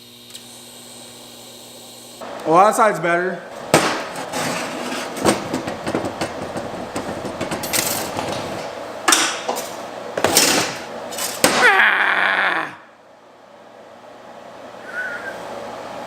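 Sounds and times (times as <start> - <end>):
metal tools clanking: 4.2 - 11.5.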